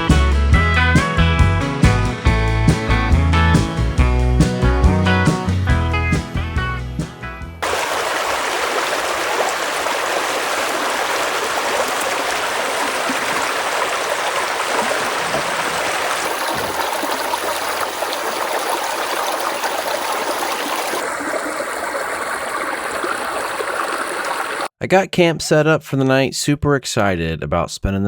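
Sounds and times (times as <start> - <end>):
creek water flowing: 7.6 - 24.7.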